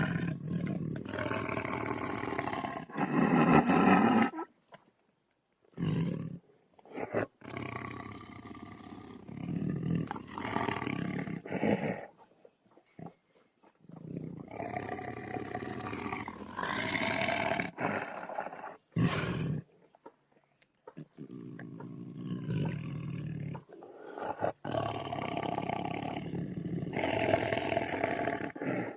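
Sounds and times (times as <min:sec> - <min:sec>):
tiger roaring: 0:00.0 - 0:04.4, 0:14.0 - 0:19.7, 0:21.0 - 0:28.9.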